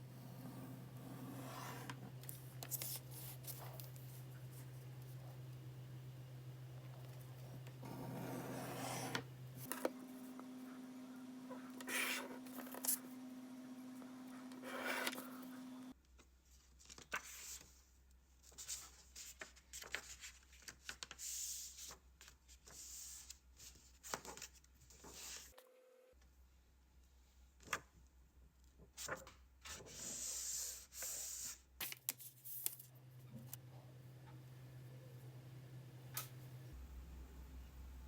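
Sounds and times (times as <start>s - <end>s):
scraping and rubbing of handwork: 0.2s - 4.8s, 7.8s - 9.7s.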